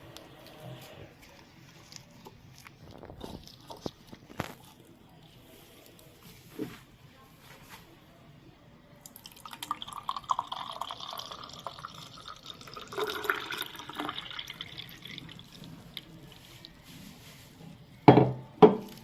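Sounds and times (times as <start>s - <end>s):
juice pouring into a glass: 9.1s - 16.4s.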